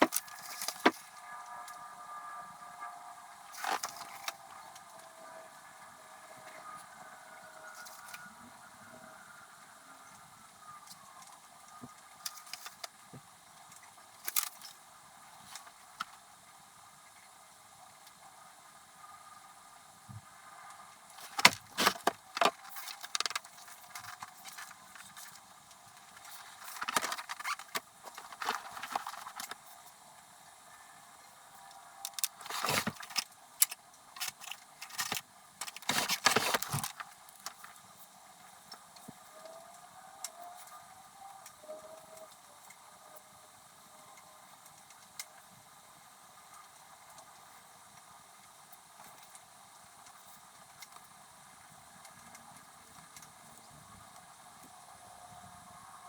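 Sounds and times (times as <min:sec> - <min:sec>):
stationery and paper handling: 0:00.0 - 0:01.1, 0:03.5 - 0:04.5, 0:12.2 - 0:12.9, 0:21.2 - 0:29.7, 0:32.1 - 0:37.8.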